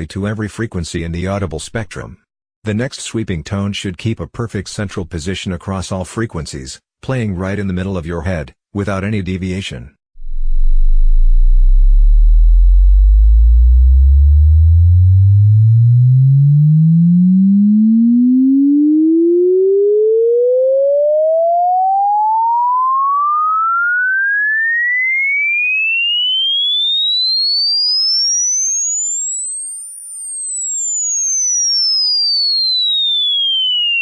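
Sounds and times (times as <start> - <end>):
sine wave tone sweeping upward: 10.2 - 34.0.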